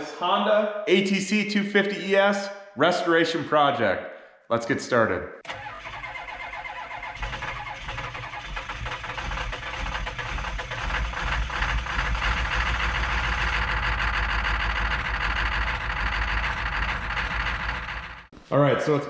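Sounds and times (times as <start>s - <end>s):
machine running steadily: 11.0s - 18.3s.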